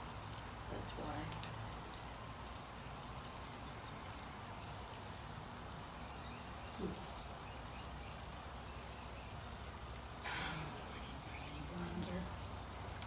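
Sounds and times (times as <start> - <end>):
outdoor background noise: 0.0 - 13.0.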